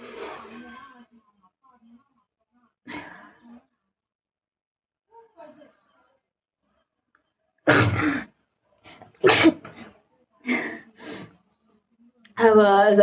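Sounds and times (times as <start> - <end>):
person sneezing: 7.7 - 8.2, 9.2 - 9.9.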